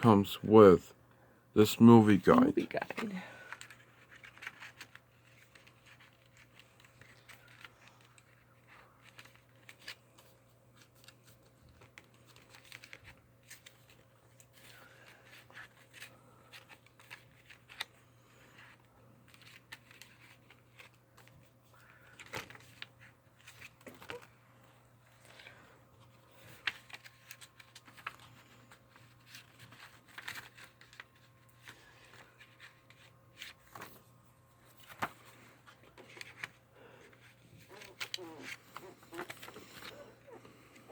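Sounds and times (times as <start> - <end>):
low steady hum: 0.0 - 40.9
paper rustling: 1.6 - 40.9.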